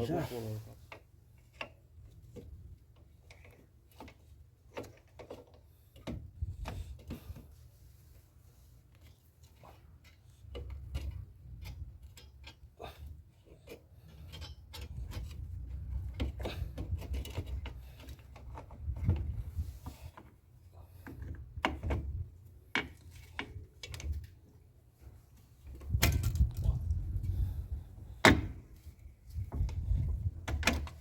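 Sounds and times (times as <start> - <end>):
metal clicks and knocks: 10.0 - 12.6, 13.6 - 19.4, 29.4 - 31.0.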